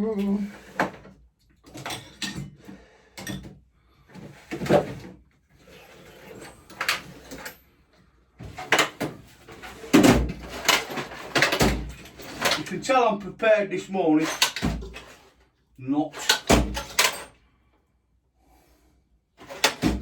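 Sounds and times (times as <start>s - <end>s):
hand tools and metal parts clattering: 0.1s - 3.5s, 8.5s - 13.0s, 14.2s - 15.4s, 16.1s - 17.4s.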